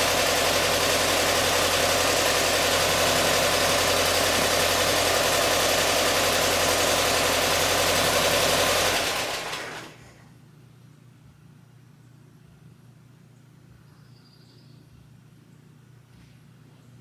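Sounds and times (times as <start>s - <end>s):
car engine idling: 0.0s - 10.1s.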